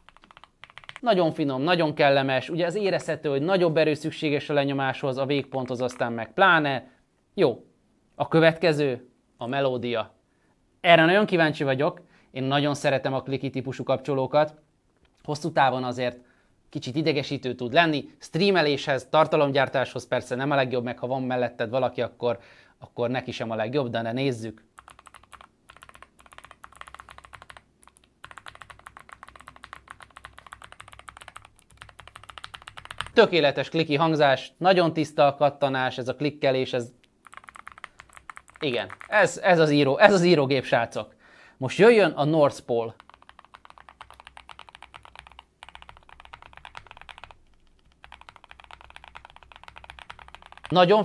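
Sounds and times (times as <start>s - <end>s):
clicky mechanical keyboard typing: 0.0s - 1.0s, 24.8s - 33.2s, 37.2s - 39.2s, 43.0s - 50.9s.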